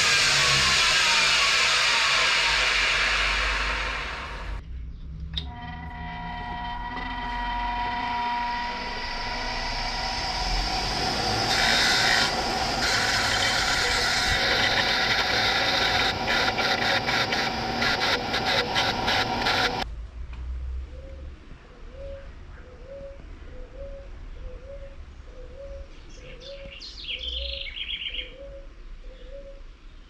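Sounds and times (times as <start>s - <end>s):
abrasive scraping on a workpiece: 0.0s - 4.6s, 5.4s - 19.8s
click: 5.2s - 5.5s
faint tones: 5.4s - 19.8s.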